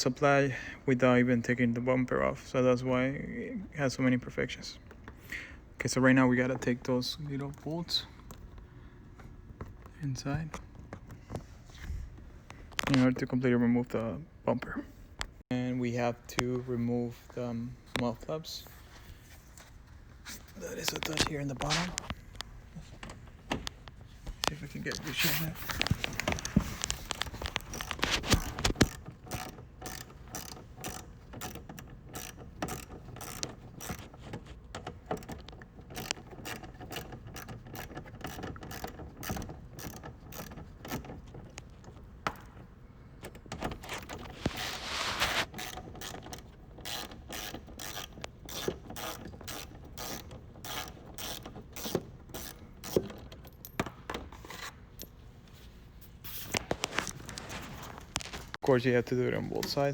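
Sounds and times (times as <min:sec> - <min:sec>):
tool and parts scraping: 0:16.3 - 0:58.6
ratchet wrench clicking: 0:27.8 - 0:34.1, 0:35.9 - 0:41.1, 0:45.6 - 0:53.8.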